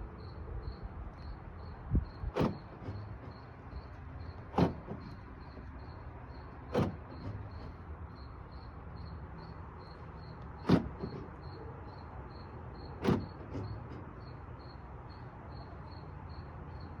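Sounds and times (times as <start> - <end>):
car door latch clunks: 2.2 - 5.8, 6.7 - 7.8, 10.4 - 11.6, 12.9 - 14.2.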